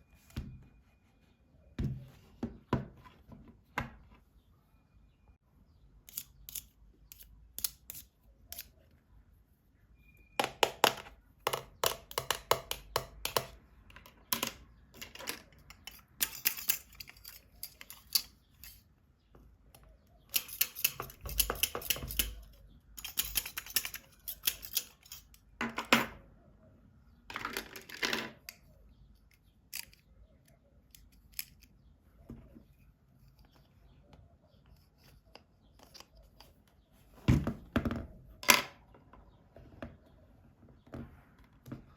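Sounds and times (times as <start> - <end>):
plastic toys clicking and snapping: 6.1 - 8.7, 10.4 - 18.8, 20.3 - 25.4, 29.2 - 31.8.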